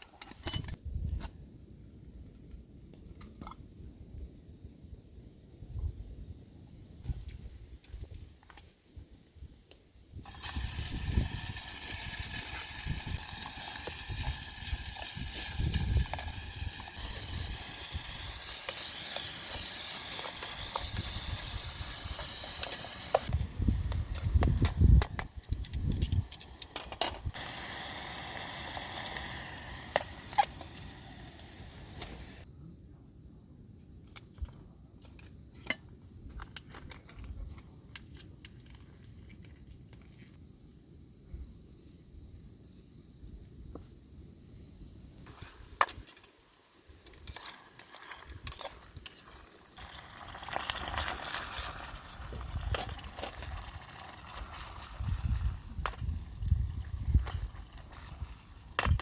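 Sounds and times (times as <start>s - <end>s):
food sizzling in a pan: 10.2s - 24.3s, 27.3s - 32.4s, 47.0s - 58.7s.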